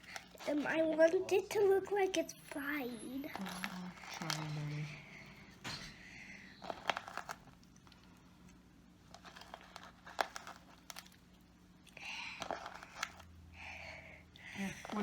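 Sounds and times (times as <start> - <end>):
slime clicking and crackling: 6.6 - 13.3.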